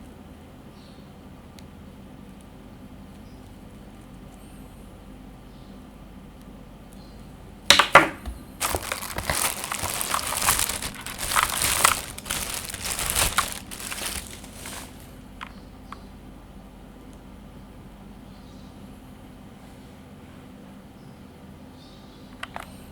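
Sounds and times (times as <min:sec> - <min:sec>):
packaging rustling and crinkling: 0:08.6 - 0:15.2.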